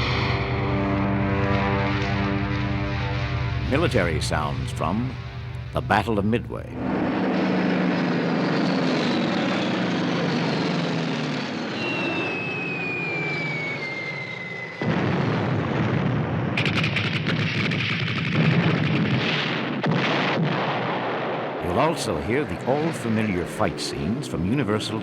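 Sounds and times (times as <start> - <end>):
loud explosion blast: 0.0 - 6.1, 6.7 - 23.9
aircraft engine drone: 0.0 - 17.2, 21.6 - 25.0
falling whistle: 11.3 - 15.1
rapid gunfire: 15.8 - 21.4.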